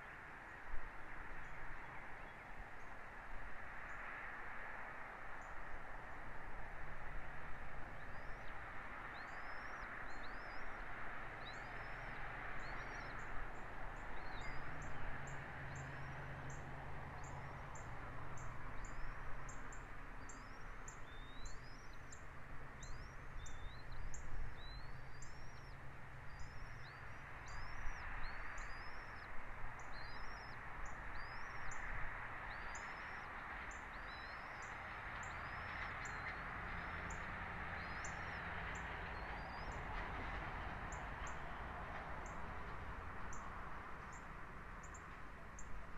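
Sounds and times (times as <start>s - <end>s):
bird chirping: 17.2s - 31.9s, 32.5s - 37.2s, 37.8s - 39.8s.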